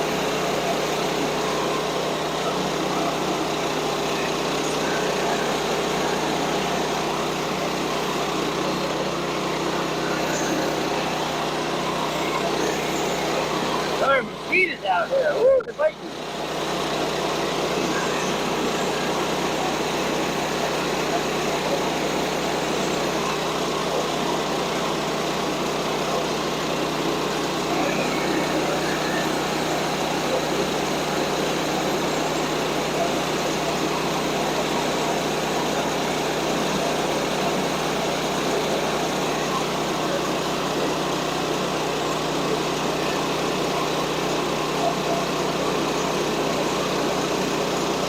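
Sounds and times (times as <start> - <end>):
small gas engine running: 0.0 - 48.0.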